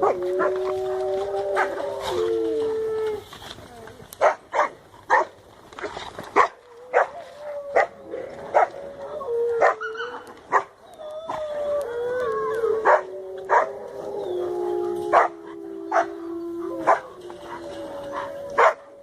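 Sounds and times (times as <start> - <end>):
dogs howling: 0.0 - 3.8, 6.6 - 19.0
dogs barking: 4.2 - 5.4, 6.4 - 7.9, 10.5 - 10.8, 12.8 - 13.8, 15.1 - 16.2, 16.8 - 19.0.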